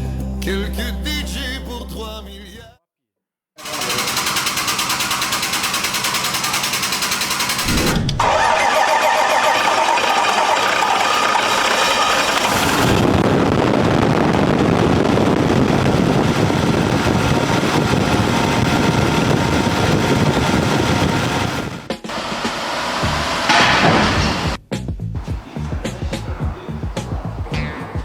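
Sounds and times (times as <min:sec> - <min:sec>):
car engine running: 0:03.6 - 0:24.6.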